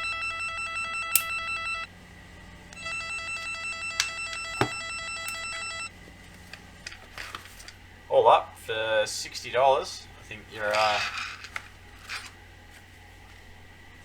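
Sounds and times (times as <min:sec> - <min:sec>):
sharp clicks: 0:01.2 - 0:01.4.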